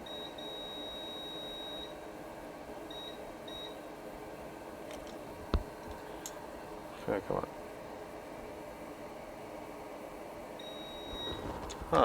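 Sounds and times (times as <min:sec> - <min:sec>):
multimeter continuity beeps: 0:00.0 - 0:02.0, 0:02.9 - 0:03.9, 0:10.6 - 0:11.6.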